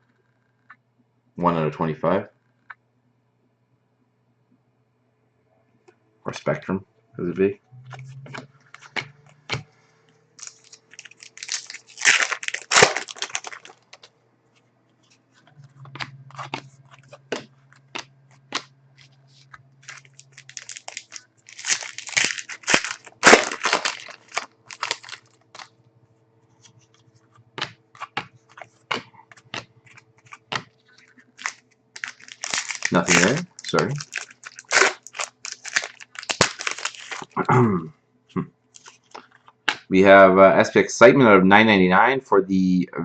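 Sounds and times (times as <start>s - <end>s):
card pack wrappers crinkling: 10.4s - 14.1s, 15.8s - 25.7s, 27.6s - 37.4s, 38.7s - 39.8s.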